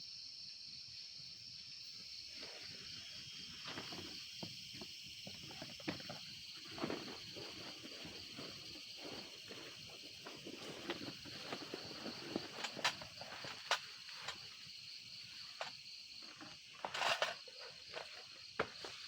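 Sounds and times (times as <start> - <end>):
insects chirring: 0.0 - 19.0
rustle: 5.5 - 19.0
clicks and knocks of handling: 16.8 - 18.2.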